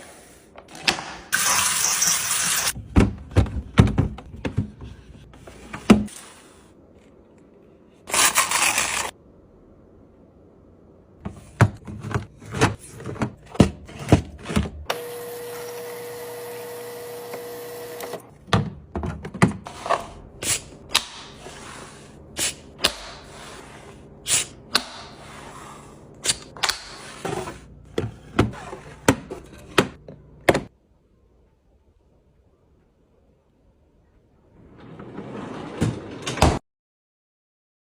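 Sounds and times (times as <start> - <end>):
groceries knocking and clicking: 2.8 - 6.1, 11.2 - 15.0, 18.3 - 20.2.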